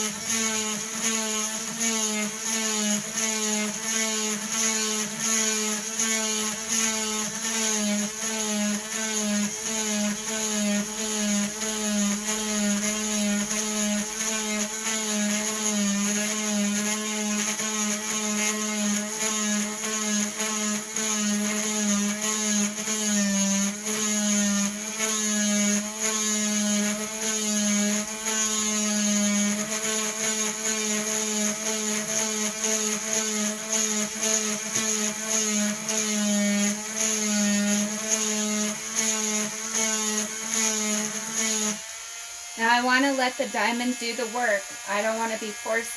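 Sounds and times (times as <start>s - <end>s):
rotary tool whining: 0.0s - 45.9s.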